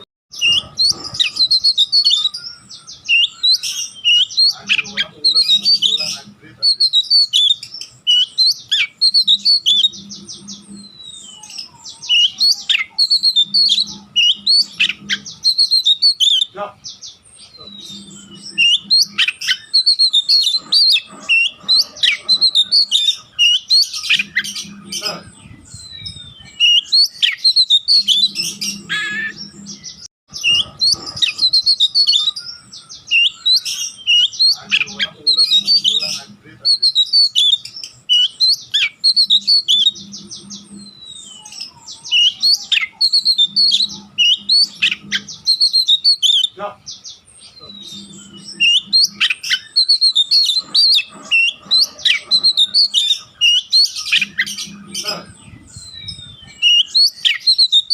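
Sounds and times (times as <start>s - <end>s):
bird singing chirps and whistles: 0.0s - 57.9s.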